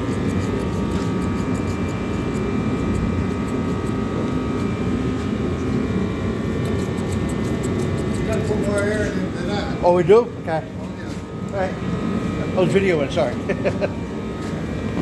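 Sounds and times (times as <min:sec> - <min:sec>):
motor humming with whine: 0:00.0 - 0:15.0.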